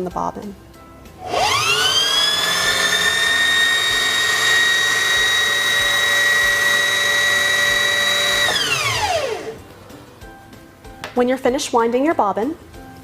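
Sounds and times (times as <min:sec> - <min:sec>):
sewing machine whining: 0:01.2 - 0:09.6.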